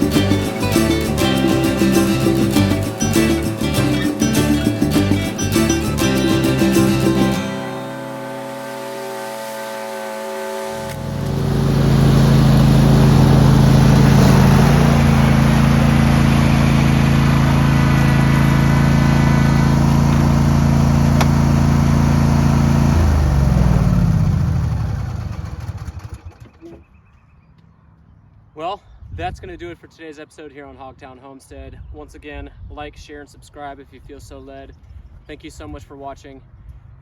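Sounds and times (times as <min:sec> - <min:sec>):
music: 0:00.0 - 0:08.6
lawn mower engine running: 0:00.0 - 0:26.6.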